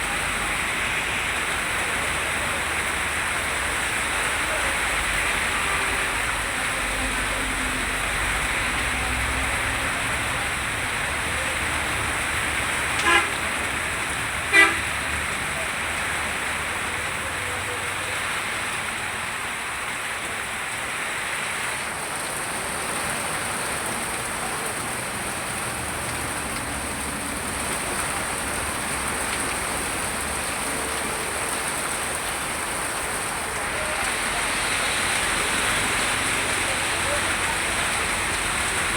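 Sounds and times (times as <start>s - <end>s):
steady rain: 0.0s - 38.9s
vehicle horn toots: 13.0s - 13.5s, 14.5s - 15.0s.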